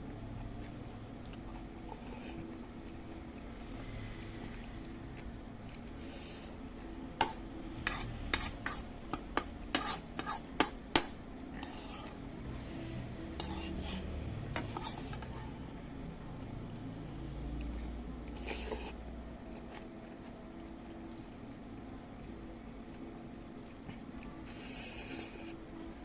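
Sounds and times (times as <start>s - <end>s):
cutlery clinking against a bowl: 7.2s - 12.1s, 13.4s - 15.5s.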